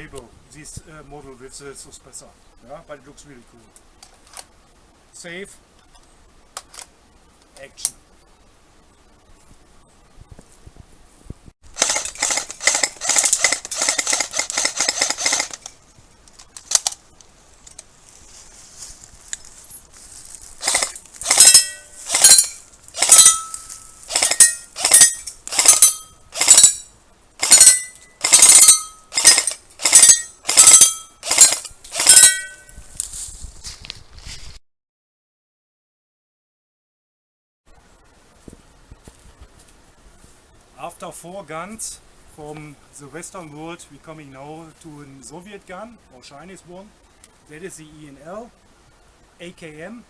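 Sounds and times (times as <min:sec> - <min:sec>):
airsoft gun full-auto burst: 0:11.7 - 0:15.8, 0:20.6 - 0:32.7
airsoft gun click: 0:16.3 - 0:17.0.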